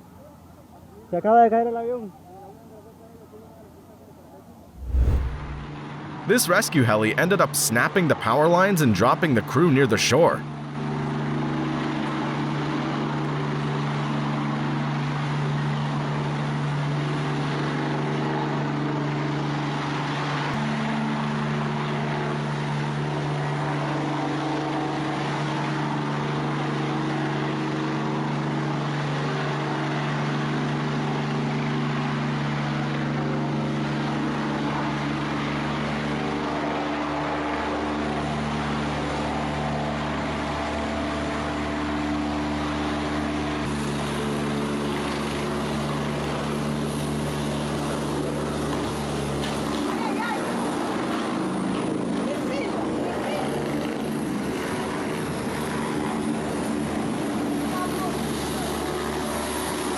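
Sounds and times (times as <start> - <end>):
helicopter engine and rotor: 50.5 - 59.9.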